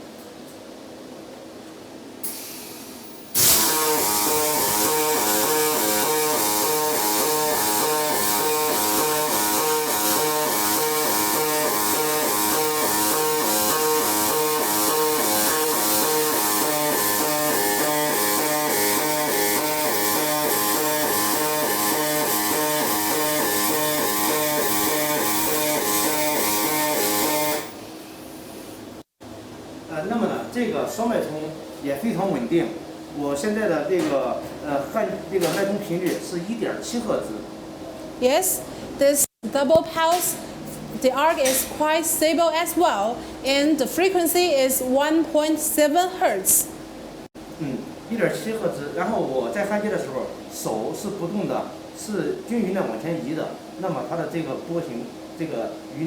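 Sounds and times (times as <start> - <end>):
welding arc crackling buzz: 2.2 - 28.3.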